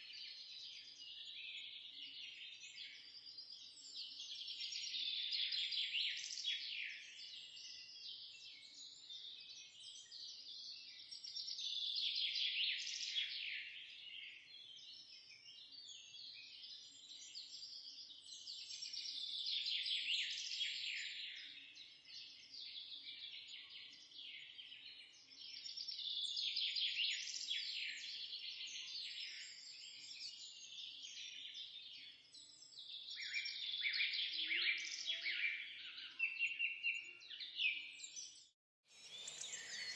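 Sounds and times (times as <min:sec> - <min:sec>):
songbirds chirping and singing: 0:32.9 - 0:39.9.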